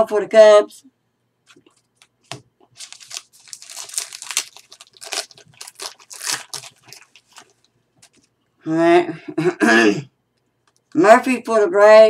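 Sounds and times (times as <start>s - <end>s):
foil wrapper crinkling and tearing: 2.7s - 8.2s.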